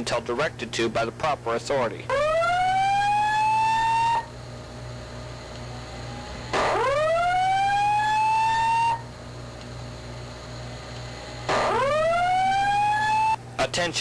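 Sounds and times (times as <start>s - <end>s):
low steady hum: 0.0s - 14.0s
fire alarm whoop: 2.1s - 4.3s, 5.7s - 9.1s, 11.5s - 13.4s.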